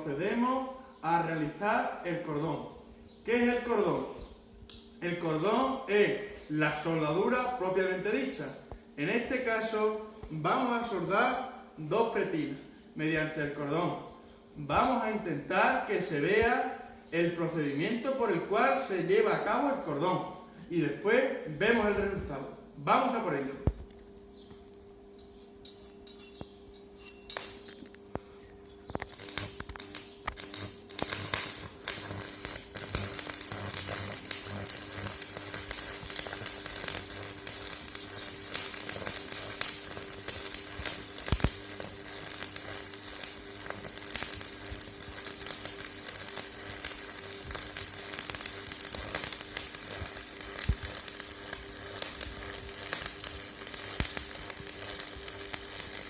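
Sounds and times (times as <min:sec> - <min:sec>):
welding arc crackling and sizzling: 0:27.0 - 0:56.0
electrode striking clicks: 0:28.9 - 0:56.0.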